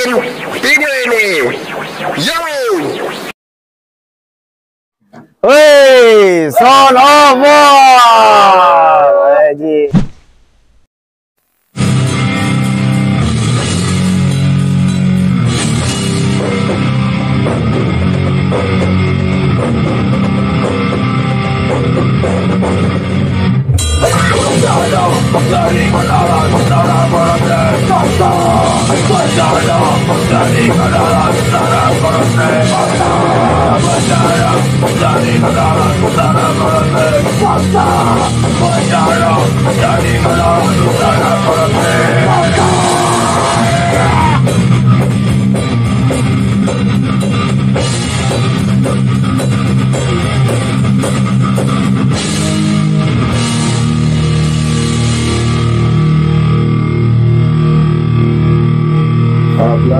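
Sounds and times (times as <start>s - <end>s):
heavy band playing: 12.0s - 59.5s.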